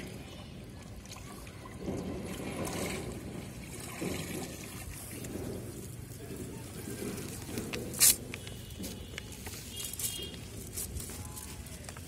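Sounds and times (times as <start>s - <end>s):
water trickling and splashing: 0.0s - 12.0s.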